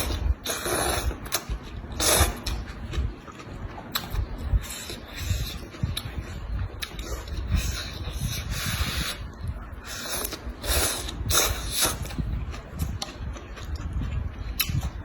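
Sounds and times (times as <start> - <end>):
close-miked chewing and crunching: 0.0 - 15.0.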